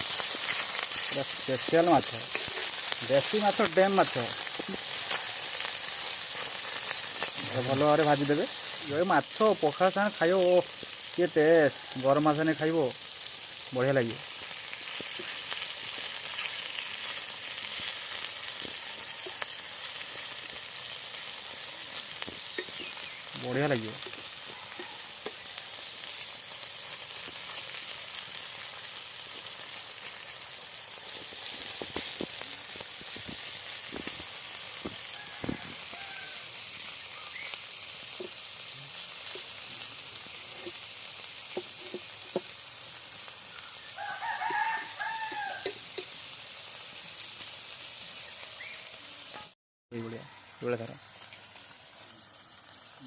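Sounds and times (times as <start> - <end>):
fish sizzling in oil: 0.0 - 53.0
rooster crowing: 4.9 - 5.9, 11.4 - 12.4, 18.8 - 19.7, 24.4 - 25.4, 34.9 - 37.4, 43.5 - 45.8, 50.0 - 50.8.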